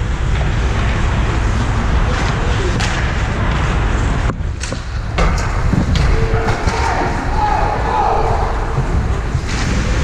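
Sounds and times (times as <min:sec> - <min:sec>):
arena crowd noise with deep rumble: 0:00.0 - 0:10.0
hockey sticks and puck clacking: 0:00.2 - 0:07.4.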